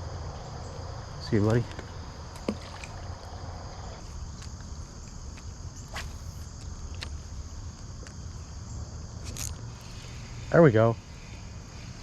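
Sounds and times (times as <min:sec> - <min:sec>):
insects chirring: 0:00.0 - 0:12.0.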